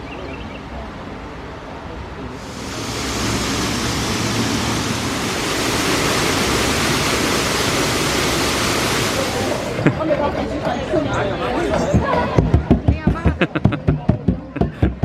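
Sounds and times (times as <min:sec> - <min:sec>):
waterfall roaring: 0:02.3 - 0:10.8.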